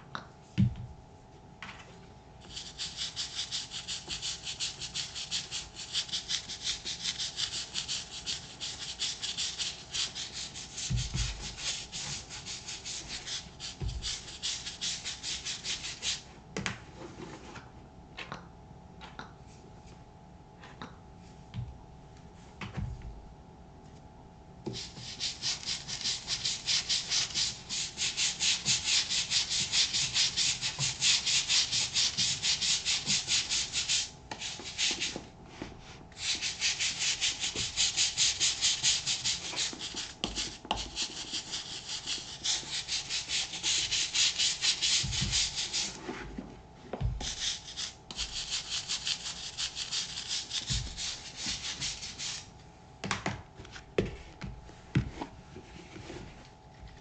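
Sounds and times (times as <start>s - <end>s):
brush scrubbing boot sole: 24.8s - 35.2s, 36.2s - 46.0s.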